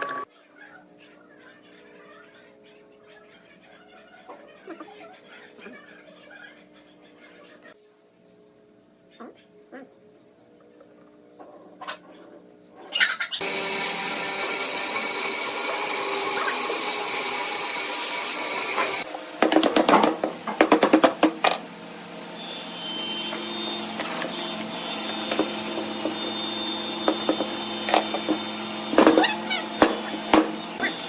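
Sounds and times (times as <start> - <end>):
lathe spinning: 13.4 - 19.1
tool hissing on wood: 13.4 - 19.1.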